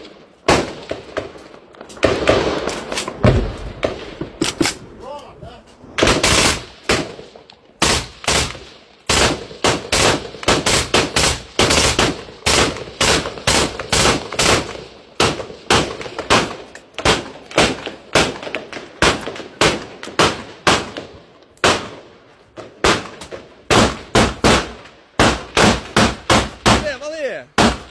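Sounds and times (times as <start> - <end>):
gunshots: 0.0 - 4.9, 6.0 - 27.9.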